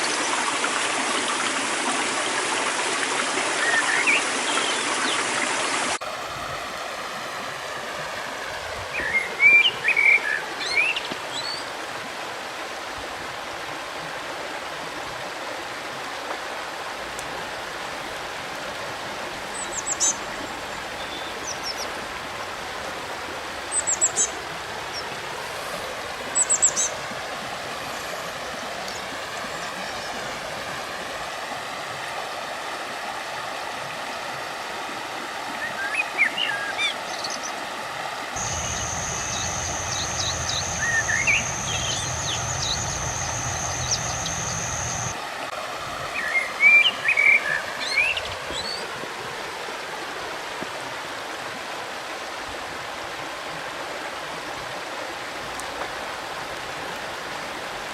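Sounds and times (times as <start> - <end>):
river water flowing: 0.0 - 57.9
small birds chirping: 38.4 - 45.2.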